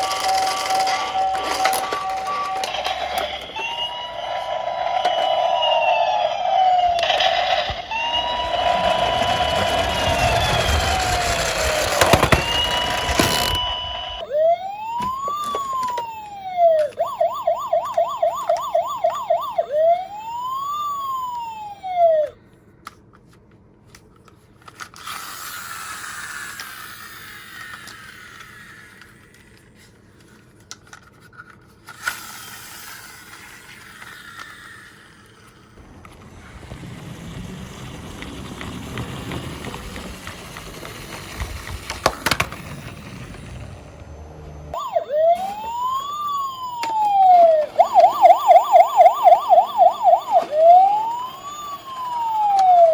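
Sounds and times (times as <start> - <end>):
toy electronic siren: 0.0 - 22.4, 24.7 - 29.6, 32.0 - 35.7, 44.4 - 52.9
toy cars rolling down slope: 0.0 - 23.3, 23.9 - 44.1, 44.7 - 52.9.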